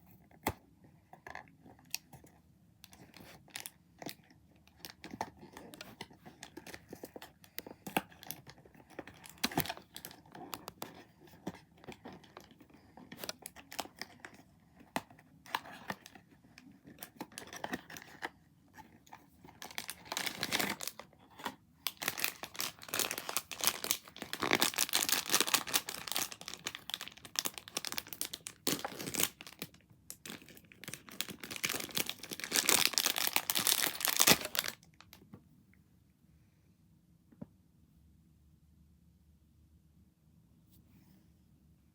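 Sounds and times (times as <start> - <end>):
packaging torn and crinkled: 19.6 - 21.0, 21.8 - 35.0.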